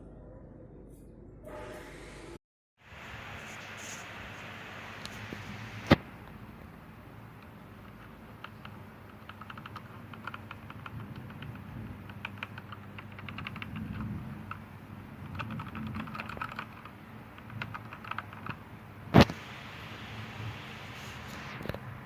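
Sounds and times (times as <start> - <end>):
mechanical keyboard key clicks: 7.9 - 14.6, 15.2 - 18.6.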